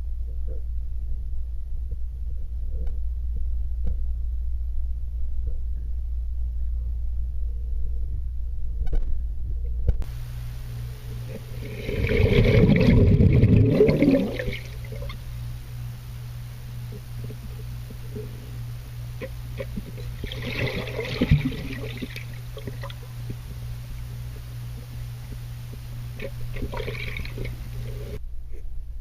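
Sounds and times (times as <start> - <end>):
muffled underwater rumble: 0.0 - 29.0
bubbling gurgling water: 11.2 - 15.3, 19.1 - 23.6, 24.8 - 28.2.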